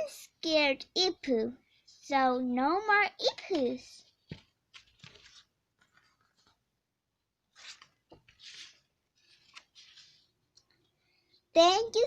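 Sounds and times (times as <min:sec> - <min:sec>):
paper page rustling: 0:03.3 - 0:06.7, 0:07.5 - 0:10.9.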